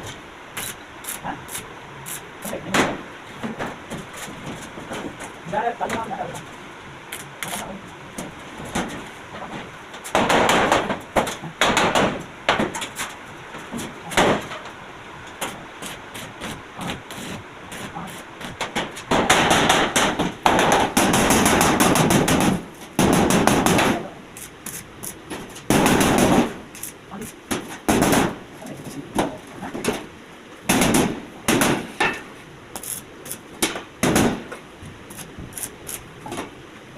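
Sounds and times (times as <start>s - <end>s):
arc welding crackling: 0.0s - 2.7s, 7.1s - 7.8s, 14.0s - 28.9s, 32.7s - 36.4s.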